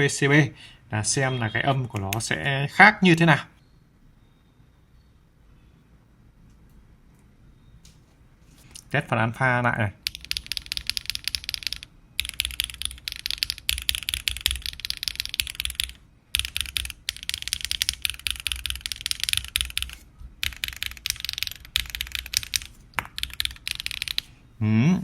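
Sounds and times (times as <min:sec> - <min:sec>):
fast typing on mechanical keyboard: 0:10.0 - 0:24.3.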